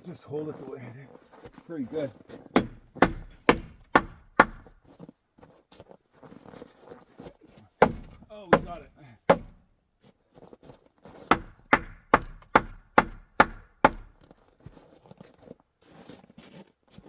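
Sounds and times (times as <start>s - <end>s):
hammer blows on wooden pole: 2.5s - 4.6s, 7.8s - 9.6s.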